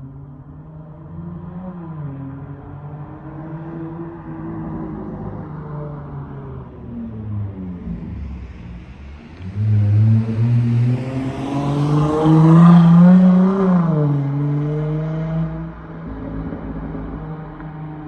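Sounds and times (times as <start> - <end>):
car exhaust accelerating: 6.5 - 15.8.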